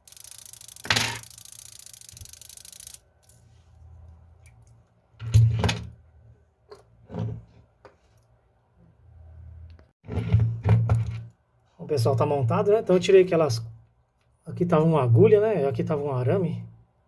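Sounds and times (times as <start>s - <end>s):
alarm clock bell rattling: 0.0s - 3.0s.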